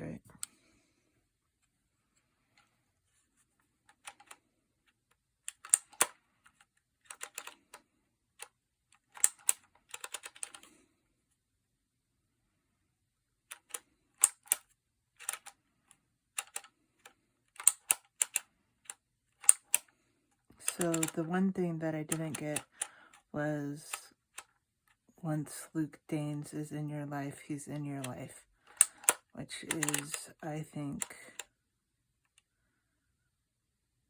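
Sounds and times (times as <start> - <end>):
label maker wheel clicking: 20.6 - 21.3, 28.7 - 30.3.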